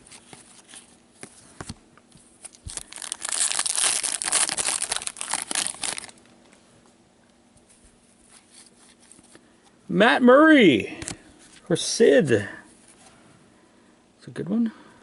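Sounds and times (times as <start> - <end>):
wrapper crinkling and tearing: 2.4 - 6.2.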